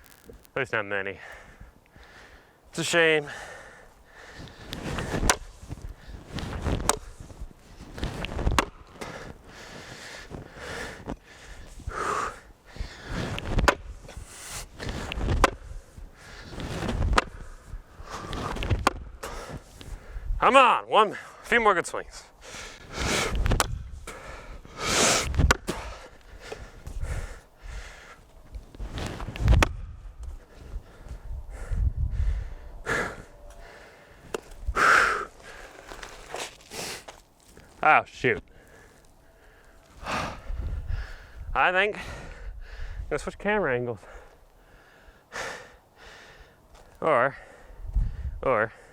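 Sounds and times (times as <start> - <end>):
person breathing: 1.2 - 6.3, 9.0 - 13.4, 22.3 - 28.3, 30.2 - 35.8, 38.5 - 43.1, 44.0 - 46.6
axe chopping wooden log: 8.5 - 8.7, 15.4 - 15.6, 18.7 - 19.0, 25.4 - 25.8.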